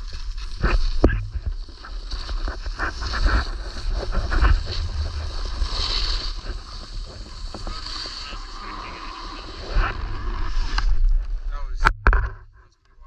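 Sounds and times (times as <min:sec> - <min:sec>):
skis sliding on snow: 0:00.0 - 0:11.0
wind buffeting microphone: 0:02.6 - 0:07.8.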